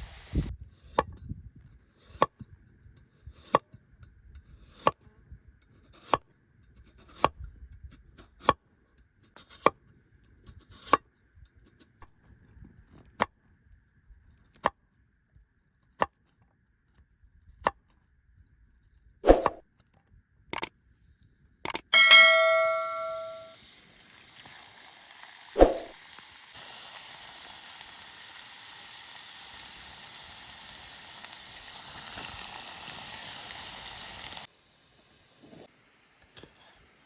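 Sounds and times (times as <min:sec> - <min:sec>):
knife chopping on cutting board: 0:19.3 - 0:19.6.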